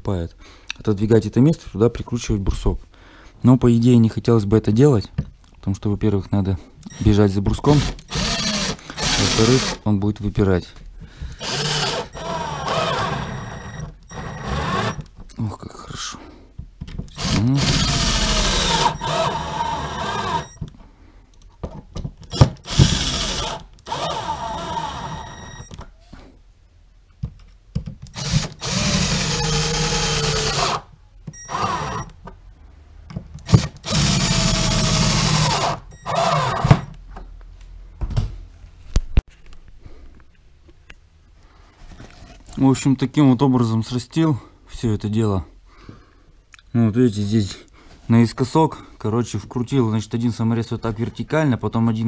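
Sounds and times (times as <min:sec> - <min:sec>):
drill-driver driving screws into wood: 0:07.7 - 0:09.8, 0:11.4 - 0:15.1, 0:17.1 - 0:20.6, 0:22.3 - 0:25.7, 0:28.1 - 0:30.9, 0:31.5 - 0:32.1, 0:33.4 - 0:36.9.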